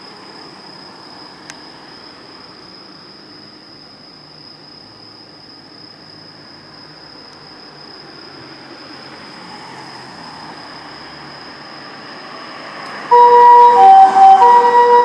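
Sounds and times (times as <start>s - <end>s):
vehicle noise: 7.3s - 15.0s
ambulance two-tone siren: 13.0s - 15.0s.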